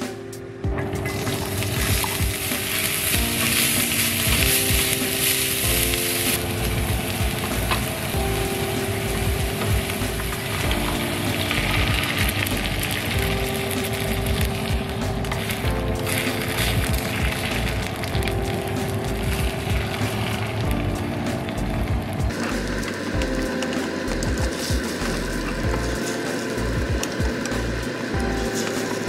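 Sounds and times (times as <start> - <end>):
soft background melody: 0.0 - 29.0
food sizzling in a frying pan: 1.4 - 10.6.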